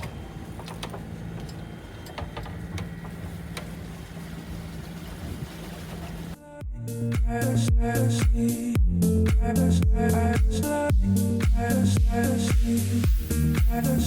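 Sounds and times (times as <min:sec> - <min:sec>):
boat engine humming: 0:00.0 - 0:14.0
music: 0:06.4 - 0:14.0.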